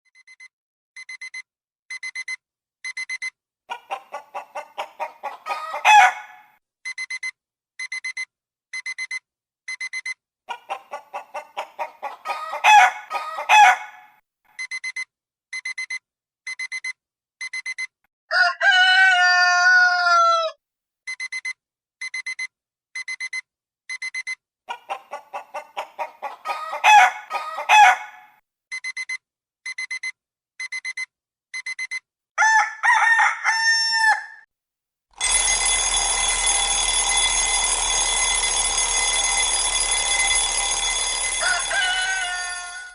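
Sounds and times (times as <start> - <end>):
chicken clucking: 3.7 - 6.4, 10.5 - 14.0, 24.7 - 28.2, 41.4 - 42.9
rooster crowing: 4.3 - 6.5, 11.7 - 14.1, 18.3 - 20.6, 25.9 - 28.3, 32.4 - 34.4, 40.1 - 42.9
electronic alarm beeps: 35.2 - 42.9.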